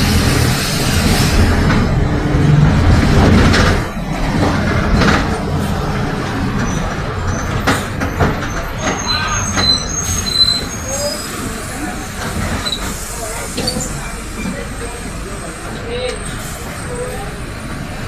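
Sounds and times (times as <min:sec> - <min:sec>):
bus diesel engine running: 0:00.0 - 0:18.0
knocks and clatters: 0:01.0 - 0:09.8.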